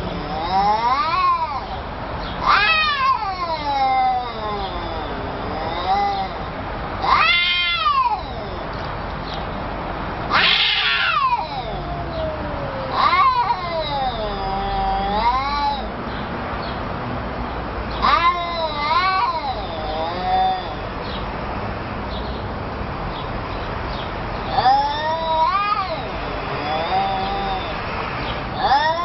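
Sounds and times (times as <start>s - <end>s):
cat yowling: 0.0s - 8.8s, 10.3s - 16.0s, 17.9s - 20.9s, 24.4s - 27.9s, 28.5s - 29.0s.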